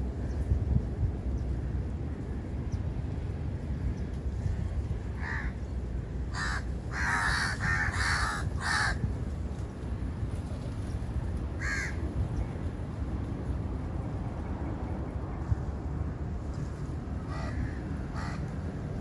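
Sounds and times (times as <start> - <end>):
crow cawing: 5.2 - 5.5, 6.3 - 9.0, 11.6 - 12.0, 17.3 - 18.5.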